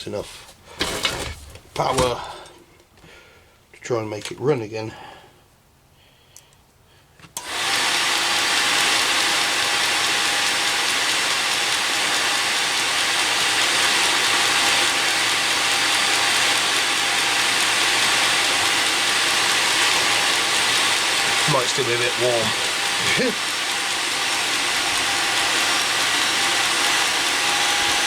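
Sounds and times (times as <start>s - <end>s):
blower spinning: 7.4s - 28.0s.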